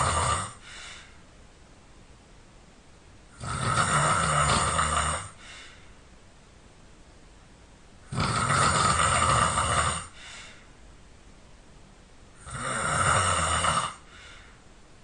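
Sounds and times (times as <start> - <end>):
person snoring loudly: 0.0 - 0.7, 3.4 - 5.4, 8.1 - 10.2, 12.4 - 14.2
soft breath out: 0.6 - 1.3, 5.4 - 6.0, 10.1 - 10.8, 14.0 - 14.7.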